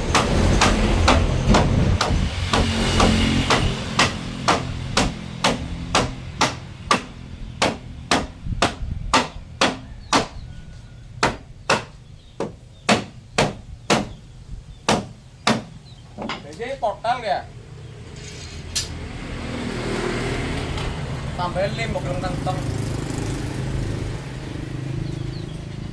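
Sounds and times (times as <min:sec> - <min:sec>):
hammer blows on wood: 0:00.0 - 0:10.6, 0:11.2 - 0:14.3, 0:14.9 - 0:15.9.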